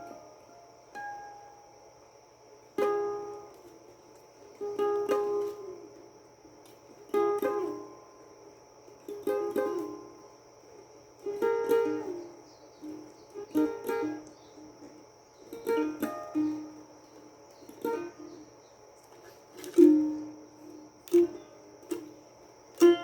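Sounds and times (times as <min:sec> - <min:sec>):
plucked string instrument chords: 0:11.3 - 0:14.9, 0:15.5 - 0:16.8, 0:21.0 - 0:23.0.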